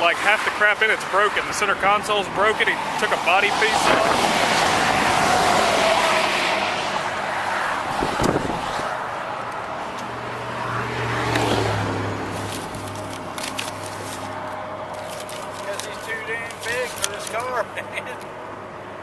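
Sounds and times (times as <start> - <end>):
vehicle road noise rush: 0.0 - 19.0.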